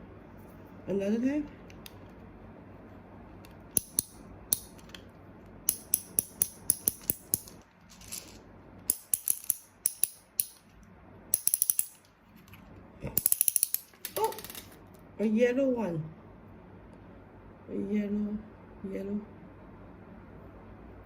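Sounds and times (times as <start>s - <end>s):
toy crank ratcheting clicks: 11.4s - 12.0s, 13.2s - 14.4s.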